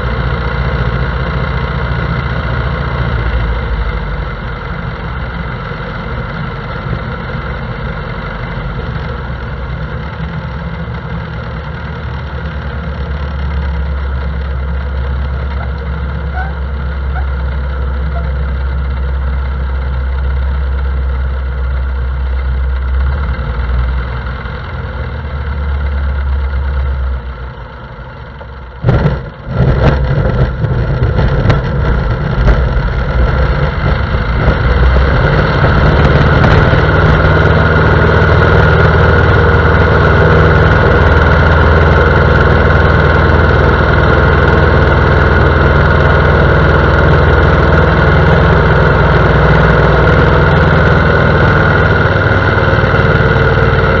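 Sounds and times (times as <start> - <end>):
light aircraft engine: 0.0 - 54.0
wheels knocking and rattling: 3.6 - 23.5, 25.8 - 54.0.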